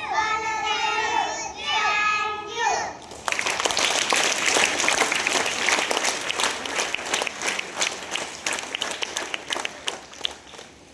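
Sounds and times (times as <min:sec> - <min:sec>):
audience applauding: 0:03.1 - 0:10.9.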